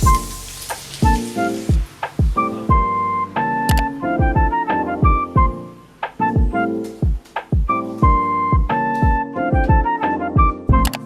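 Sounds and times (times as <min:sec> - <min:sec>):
electric keyboard chords: 0:00.0 - 0:11.0
deep kick drum thumps: 0:01.0 - 0:02.9, 0:04.2 - 0:05.6, 0:06.4 - 0:10.9.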